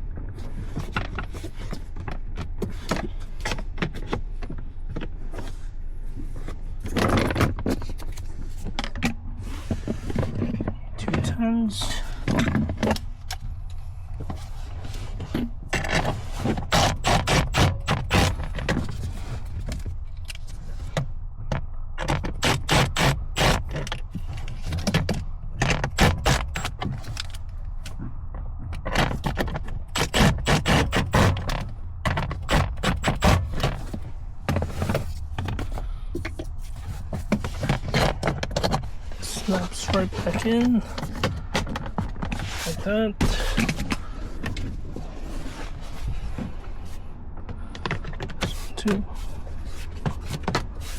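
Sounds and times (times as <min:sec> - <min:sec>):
hand tools clicking and scraping: 0:14.2 - 0:21.0, 0:22.0 - 0:28.0, 0:28.8 - 0:44.8.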